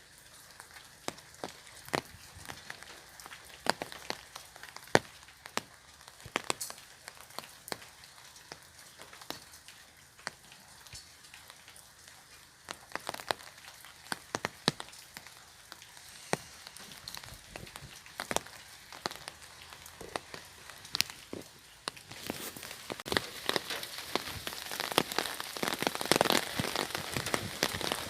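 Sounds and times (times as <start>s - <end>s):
rain drops tapping on umbrella: 0.0s - 28.0s.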